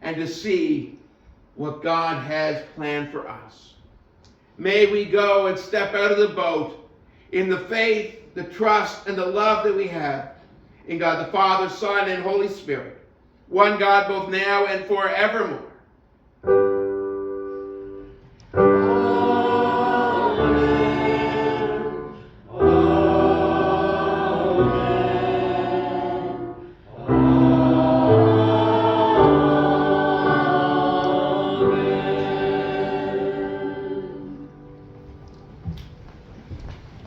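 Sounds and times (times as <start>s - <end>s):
choir singing: 18.6s - 35.0s
singers breathing: 22.0s - 22.5s.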